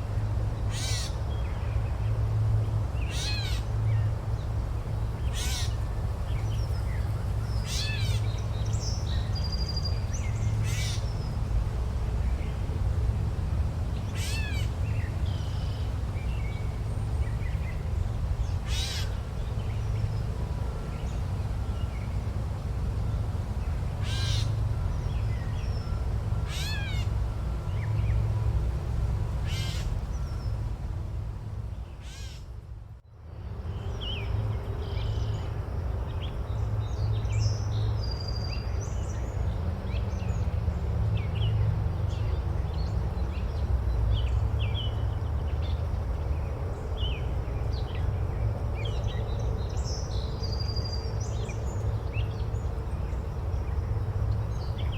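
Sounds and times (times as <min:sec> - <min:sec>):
large bird harsh calls: 0:00.7 - 0:01.2, 0:03.1 - 0:03.7, 0:05.3 - 0:05.8, 0:18.6 - 0:19.2, 0:24.0 - 0:24.6, 0:26.4 - 0:27.1, 0:29.4 - 0:30.0, 0:32.0 - 0:32.5.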